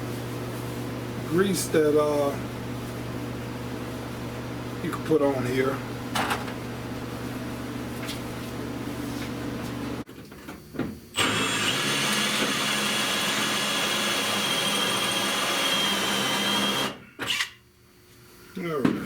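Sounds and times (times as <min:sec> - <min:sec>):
drill bit grinding sheet steel: 0:11.2 - 0:17.0
drill humming: 0:11.2 - 0:17.0.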